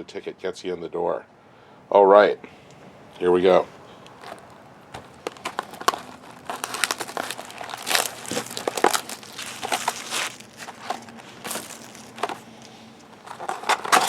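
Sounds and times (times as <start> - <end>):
plastic wrapping crinkling and tearing: 4.0 - 14.0.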